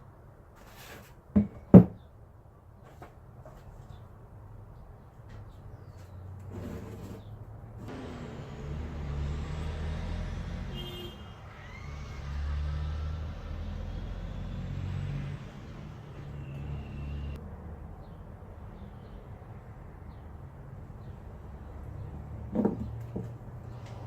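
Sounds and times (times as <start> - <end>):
vehicle engine rumble: 5.2 - 24.0.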